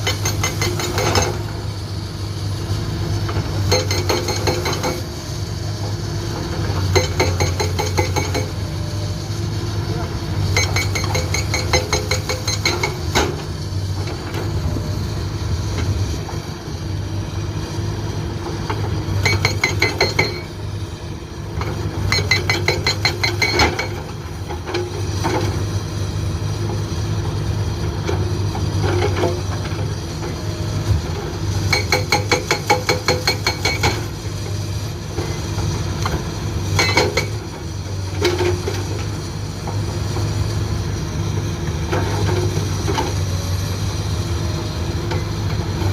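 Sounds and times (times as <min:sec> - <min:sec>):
hydraulic breaker hammering rock: 0:00.0 - 0:01.6, 0:03.2 - 0:05.1, 0:06.3 - 0:08.9, 0:10.0 - 0:14.6, 0:18.5 - 0:20.6, 0:21.6 - 0:25.6, 0:30.8 - 0:34.6, 0:35.2 - 0:40.3
diesel engine running: 0:00.0 - 0:45.9.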